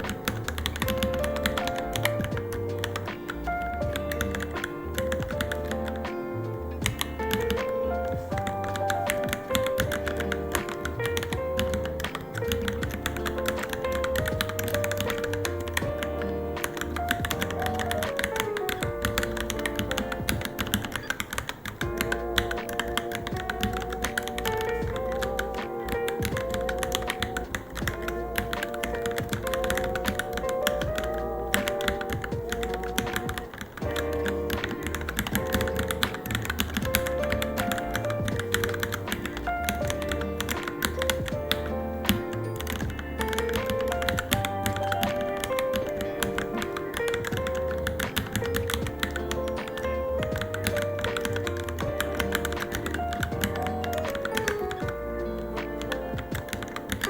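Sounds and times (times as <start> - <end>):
fast typing on mechanical keyboard: 0.0 - 6.2, 6.8 - 57.0
background music with melody: 0.0 - 57.0.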